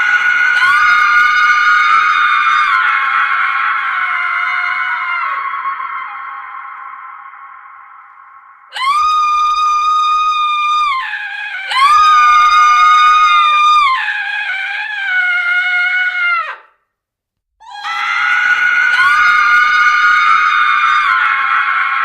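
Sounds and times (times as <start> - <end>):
woman screaming: 0.0 - 8.0, 8.7 - 16.7, 17.6 - 22.0.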